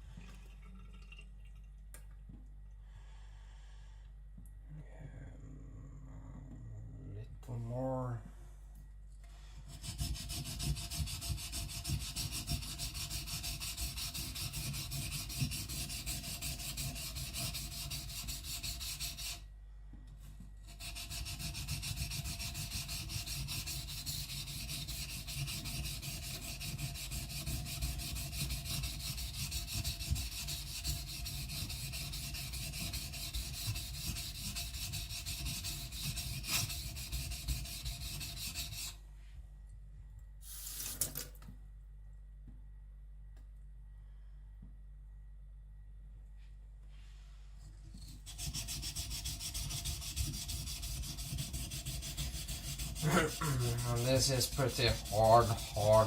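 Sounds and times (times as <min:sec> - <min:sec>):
blade grinding on whetstone: 0:09.7 - 0:19.4, 0:20.7 - 0:39.0, 0:48.2 - 0:56.0.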